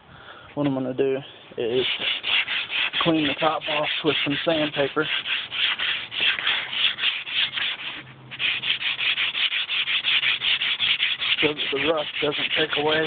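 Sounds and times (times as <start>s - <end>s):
sandpaper rubbing on metal: 1.7s - 13.0s.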